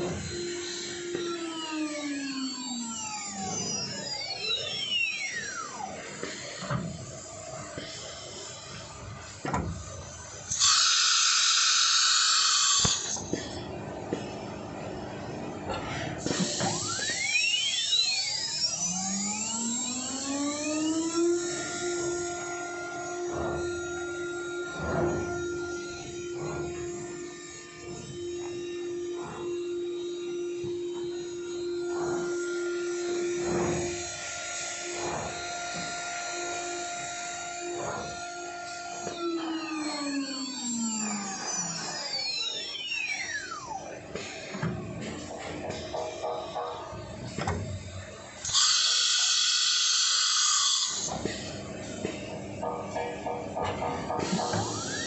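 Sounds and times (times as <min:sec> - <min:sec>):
spindle motor whine: 0:00.0 - 0:55.0.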